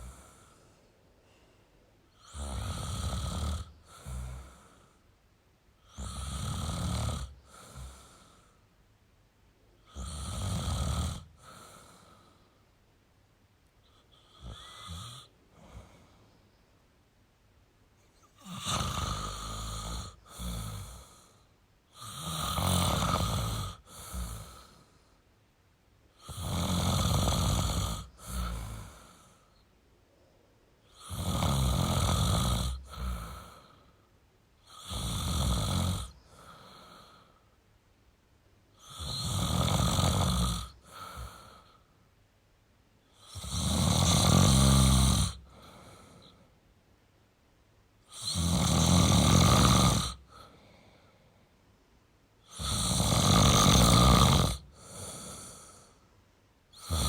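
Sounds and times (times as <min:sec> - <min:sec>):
person snoring: 0:02.1 - 0:04.9, 0:05.8 - 0:08.4, 0:09.8 - 0:12.4, 0:14.0 - 0:16.1, 0:18.3 - 0:24.8, 0:26.2 - 0:29.4, 0:30.9 - 0:33.8, 0:34.6 - 0:37.3, 0:38.8 - 0:41.8, 0:43.1 - 0:46.4, 0:48.1 - 0:51.1, 0:52.4 - 0:56.0, 0:56.7 - 0:57.0.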